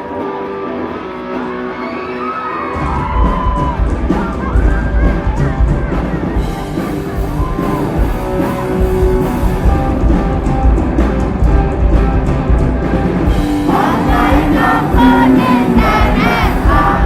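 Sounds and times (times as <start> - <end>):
live rock band playing: 0.0 - 17.0
person singing: 13.5 - 17.0.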